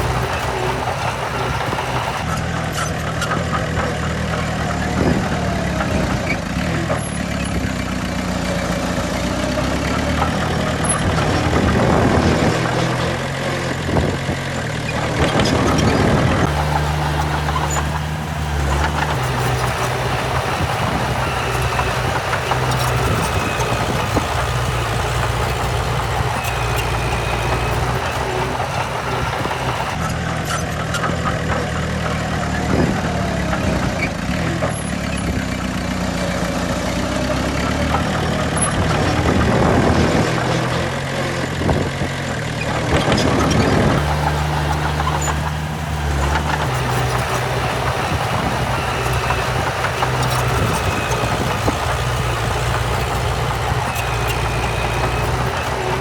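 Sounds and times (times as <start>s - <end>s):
heavy diesel machinery engines: 0.0s - 30.2s, 44.0s - 56.0s.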